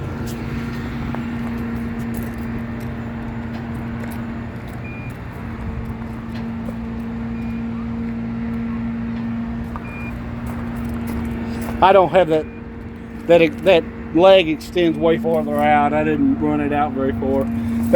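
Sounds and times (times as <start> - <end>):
truck engine humming: 0.0 - 17.9
high beeps: 9.8 - 10.2.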